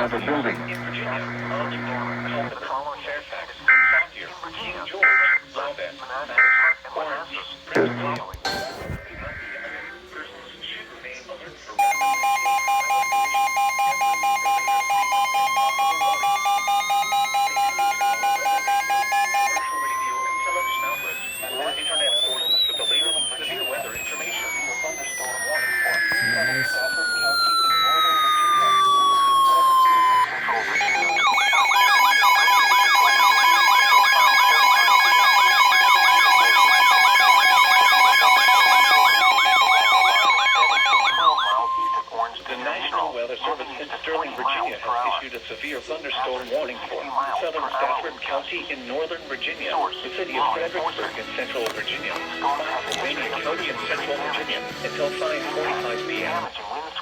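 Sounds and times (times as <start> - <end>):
steady alert tone: 8.4 - 9.6, 11.8 - 42.0
rising pitch tone: 11.8 - 42.0
rapid beeping tone: 11.8 - 42.1.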